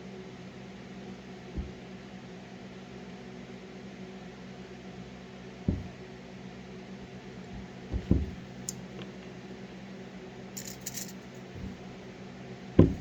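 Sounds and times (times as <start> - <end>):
light knocks of objects: 5.7 - 6.0, 7.5 - 9.4, 12.8 - 13.0
small clinks: 8.6 - 9.0, 10.5 - 11.5.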